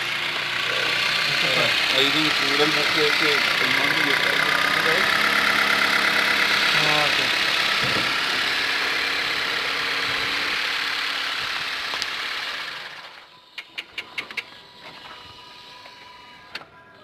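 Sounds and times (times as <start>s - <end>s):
car engine whirring hiss: 0.0s - 13.2s.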